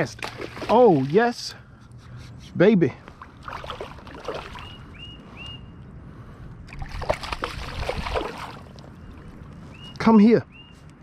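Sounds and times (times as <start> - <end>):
water splashing: 0.0 - 1.5, 3.2 - 4.8, 6.7 - 9.4.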